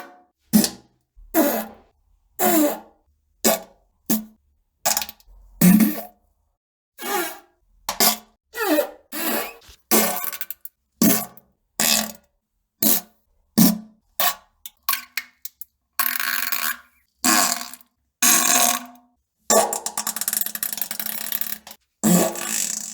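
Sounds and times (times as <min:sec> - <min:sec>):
farting: 0:22.0 - 0:22.9.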